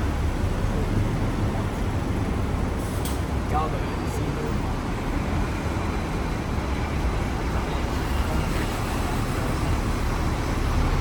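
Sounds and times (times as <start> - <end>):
tram rumbling on tracks: 0.0 - 11.0.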